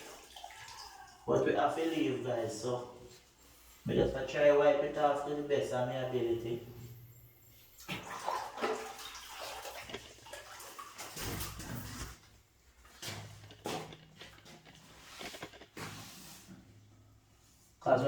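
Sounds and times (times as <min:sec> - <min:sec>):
wet sponge and water splashing: 0:00.0 - 0:03.7, 0:07.6 - 0:16.8.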